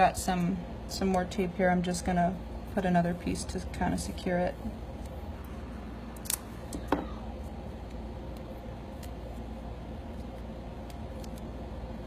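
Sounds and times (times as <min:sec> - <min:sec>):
steady low hum: 0:00.0 - 0:12.0
adhesive tape snapping: 0:06.2 - 0:06.5, 0:10.2 - 0:11.5.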